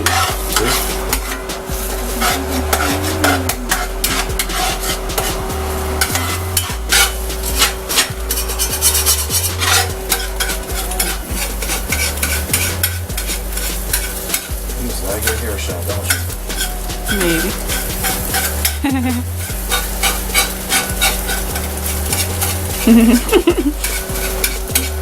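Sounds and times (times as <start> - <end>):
eggs sizzling: 0.0 - 25.0
utensil scraping frying pan: 0.0 - 25.0
utensil clicking on pan: 6.0 - 14.6, 17.4 - 25.0.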